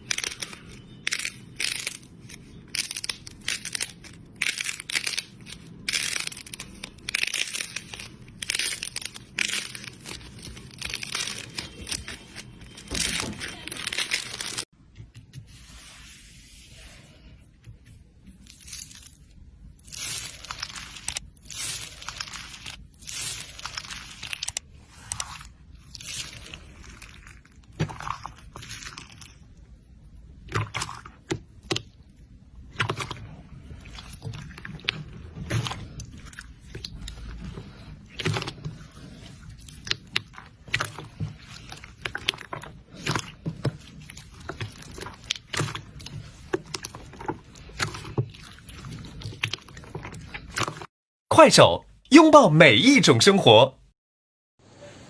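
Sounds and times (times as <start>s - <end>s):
slime crackling and popping: 0.0s - 14.7s, 18.5s - 29.6s.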